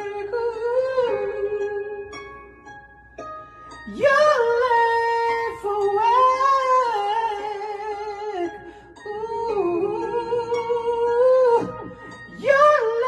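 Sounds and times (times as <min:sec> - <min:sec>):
person humming a melody: 0:03.8 - 0:13.0.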